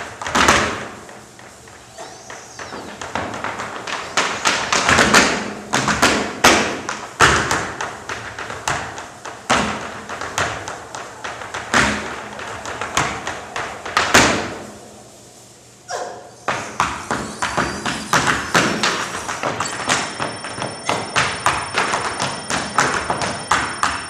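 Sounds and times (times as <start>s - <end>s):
feet stamping and tapping on stage: 0.0s - 14.6s, 16.5s - 24.0s.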